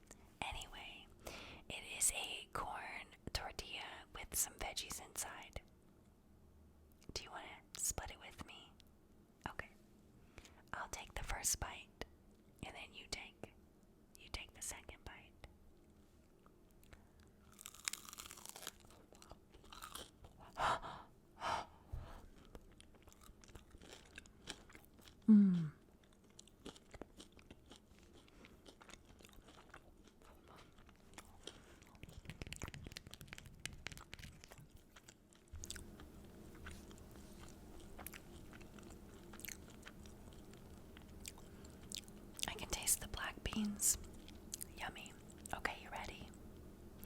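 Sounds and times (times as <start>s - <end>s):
crunchy chewing: 16.8s - 20.6s, 22.3s - 42.8s
person humming mmm: 25.2s - 25.8s
wet mouth clicks: 31.9s - 34.6s.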